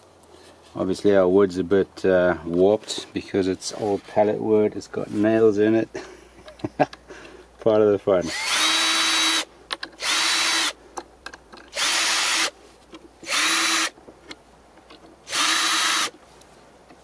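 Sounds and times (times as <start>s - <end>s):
power drill bursts into wood: 8.2s - 10.8s, 11.7s - 12.5s, 13.2s - 14.0s, 15.3s - 16.1s.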